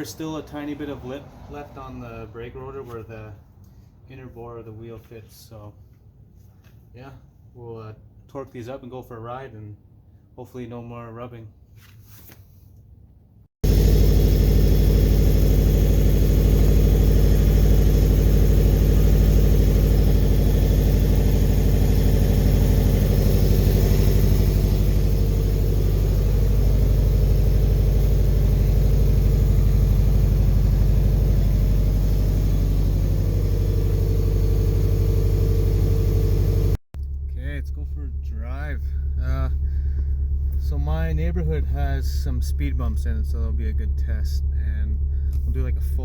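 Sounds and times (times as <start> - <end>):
car engine idling: 13.6 - 46.0.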